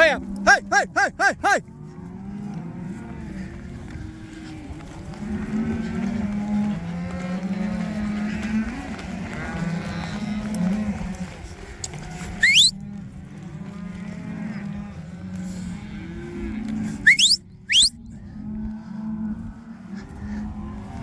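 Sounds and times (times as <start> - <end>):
cattle mooing: 0.0 - 21.0
sharp rising whistles: 12.4 - 12.7, 17.0 - 18.0.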